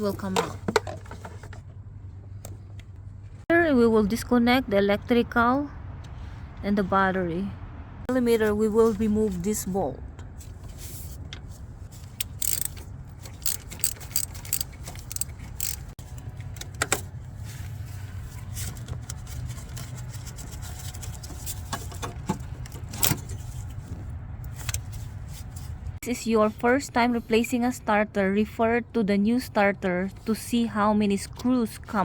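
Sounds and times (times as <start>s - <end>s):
metallic clicks of hand tools: 12.1s - 16.9s.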